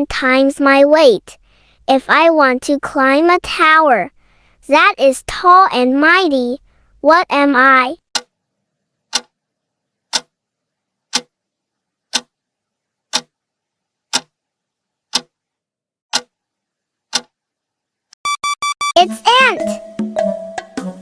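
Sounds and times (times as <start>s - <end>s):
clock ticking: 15.1s - 15.3s, 16.1s - 16.3s.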